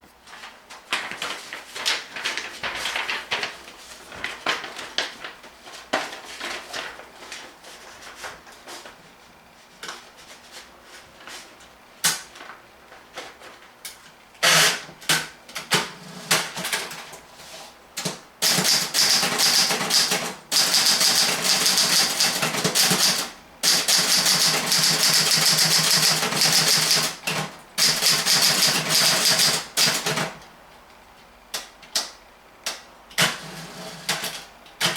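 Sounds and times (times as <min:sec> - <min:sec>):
typewriter typing: 0:18.0 - 0:30.4, 0:33.2 - 0:34.9.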